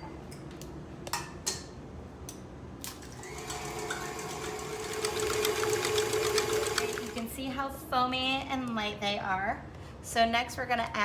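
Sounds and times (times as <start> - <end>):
electric mixer running: 3.0 - 7.4.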